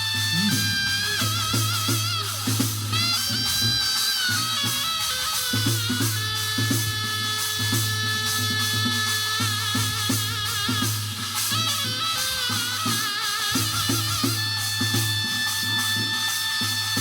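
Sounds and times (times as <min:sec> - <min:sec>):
drum strokes: 0:00.0 - 0:04.6
wind instrument melody with vibrato: 0:00.0 - 0:17.0.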